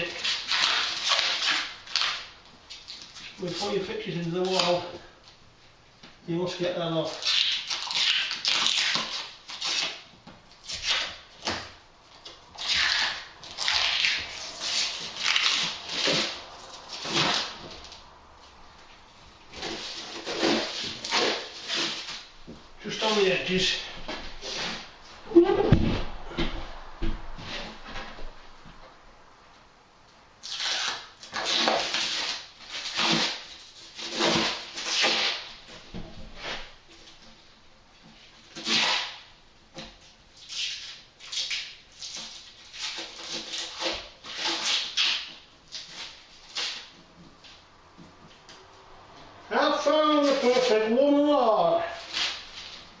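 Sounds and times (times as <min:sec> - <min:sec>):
plastic film ripping off: 0:00.0 - 0:03.8, 0:07.1 - 0:18.1, 0:19.5 - 0:22.3, 0:30.4 - 0:35.6, 0:38.5 - 0:39.3, 0:40.4 - 0:46.9, 0:51.9 - 0:52.9.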